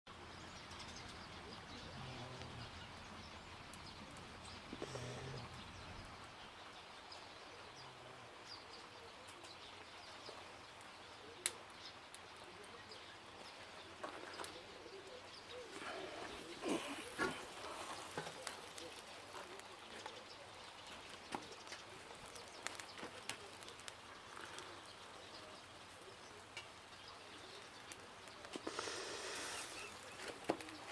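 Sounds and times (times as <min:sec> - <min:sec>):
grill fire crackling and popping: 0:00.3 - 0:07.8, 0:09.2 - 0:30.9
low cooing calls: 0:01.1 - 0:03.3, 0:04.0 - 0:06.3, 0:12.4 - 0:19.2, 0:28.4 - 0:30.9
steady hiss: 0:21.7 - 0:30.9.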